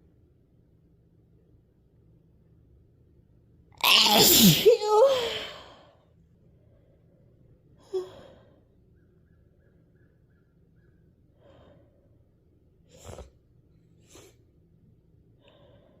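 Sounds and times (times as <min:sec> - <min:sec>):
woman sneezing: 0:03.8 - 0:05.7
quiet breathing: 0:05.4 - 0:08.9, 0:11.2 - 0:14.6, 0:15.2 - 0:16.0.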